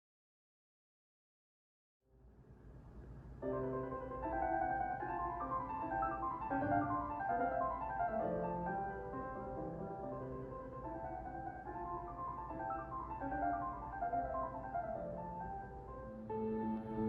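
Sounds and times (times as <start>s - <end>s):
piano melody with chords: 3.4s - 17.0s.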